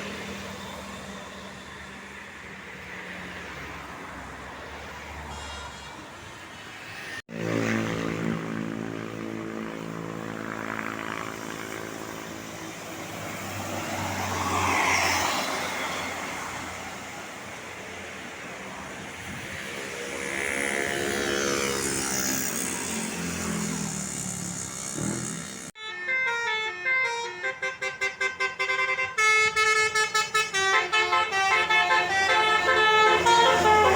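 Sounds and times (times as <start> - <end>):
traffic and tyre noise: 0.0 - 33.9
bus engine passing: 30.0 - 33.9.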